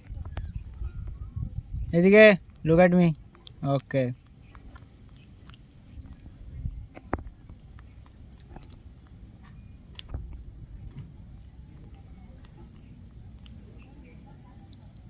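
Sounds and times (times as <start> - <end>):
monkey chewing food: 4.2 - 15.0.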